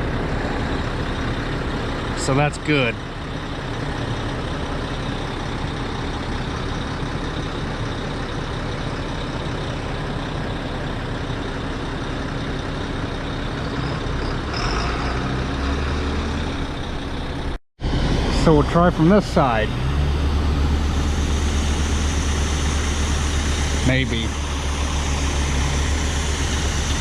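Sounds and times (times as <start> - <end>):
tractor engine running: 0.0 - 27.0
deep low rumble: 16.2 - 27.0.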